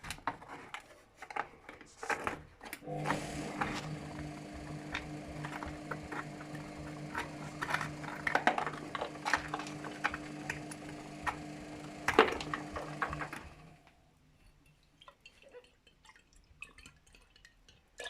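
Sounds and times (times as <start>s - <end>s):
washing machine motor humming: 2.8s - 13.9s.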